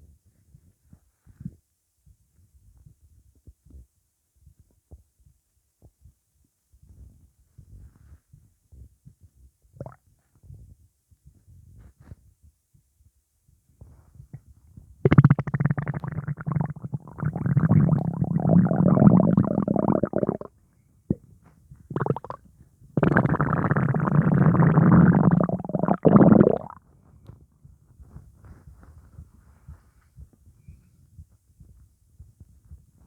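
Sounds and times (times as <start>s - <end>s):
stomach rumbling: 9.8s - 10.5s, 14.3s - 20.5s, 21.1s - 27.0s.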